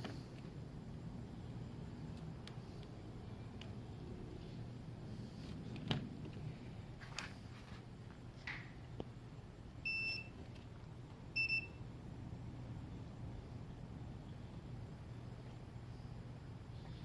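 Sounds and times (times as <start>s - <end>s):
multimeter beeps: 9.8s - 10.4s, 11.4s - 11.8s.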